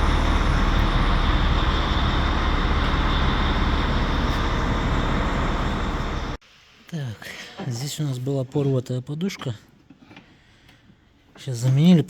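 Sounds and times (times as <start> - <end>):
machine humming: 0.0 - 6.4.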